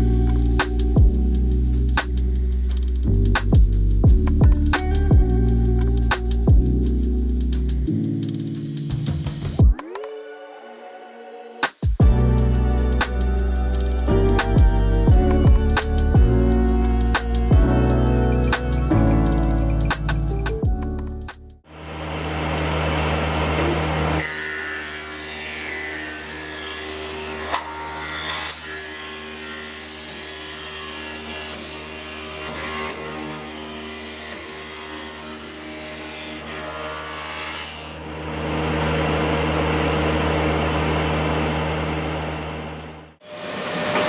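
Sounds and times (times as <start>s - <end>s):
wood cutting noise: 11.6s - 44.0s
woodworking machine motor hum: 21.7s - 30.4s, 34.6s - 43.1s.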